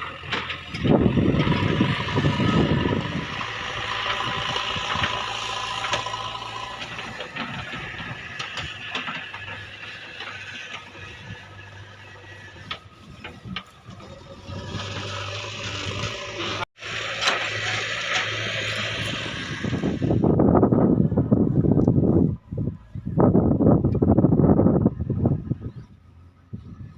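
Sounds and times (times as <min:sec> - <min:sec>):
diesel engine running: 0:00.0 - 0:26.9.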